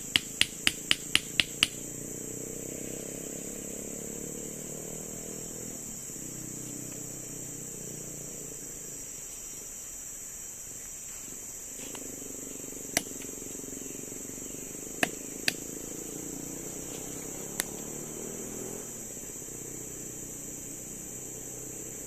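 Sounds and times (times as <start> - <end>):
insect drone: 0.0 - 22.0
sharp clicks: 0.1 - 1.8.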